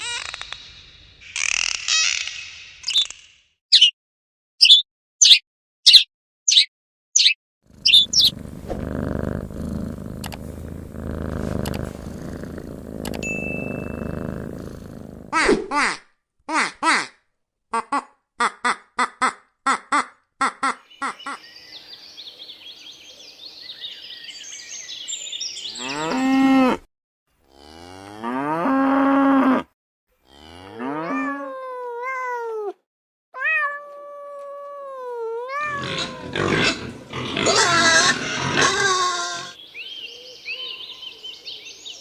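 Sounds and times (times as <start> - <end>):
quick short animal calls: 6.6 - 8.9
loud rough animal call: 7.7 - 15.4, 35.7 - 39.6
long pitched animal calls: 7.8 - 15.0
high chattering: 7.8 - 15.1.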